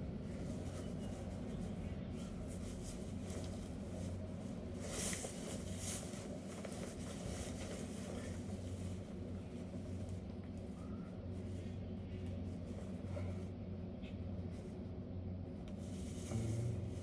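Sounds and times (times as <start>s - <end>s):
rustling scraping noise: 0.3s - 9.1s, 15.8s - 17.0s.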